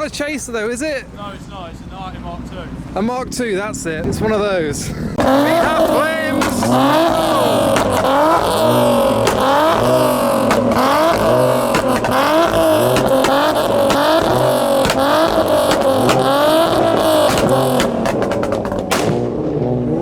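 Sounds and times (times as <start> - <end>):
car engine revving hard: 5.0 - 20.0
exhaust pops and bangs: 5.1 - 19.7.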